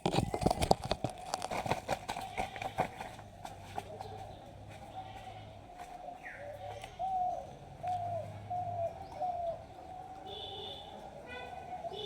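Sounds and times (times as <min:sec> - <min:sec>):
dove cooing: 0:03.8 - 0:12.0.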